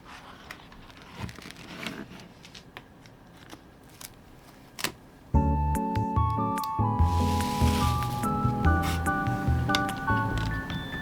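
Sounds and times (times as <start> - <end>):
music: 5.4 - 11.0
packaging rustling: 7.0 - 10.7.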